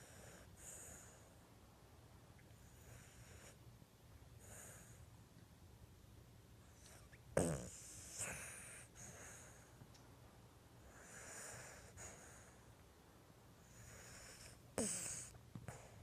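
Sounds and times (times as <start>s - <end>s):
dog snoring: 0.0s - 1.3s, 2.6s - 3.6s, 4.4s - 5.0s, 6.8s - 9.6s, 10.8s - 12.6s, 13.6s - 16.0s
dog snorting: 7.4s - 9.5s, 13.8s - 15.3s.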